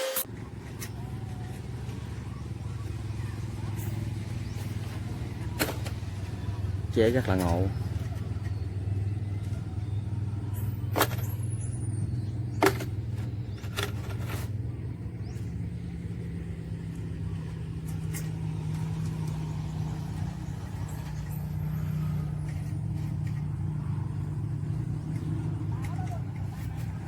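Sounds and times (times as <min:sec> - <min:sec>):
sprayer machine engine running: 0:00.0 - 0:27.0.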